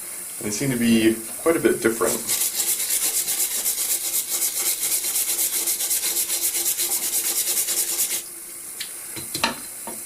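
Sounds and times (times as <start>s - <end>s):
brush scrubbing metal: 1.9s - 8.3s.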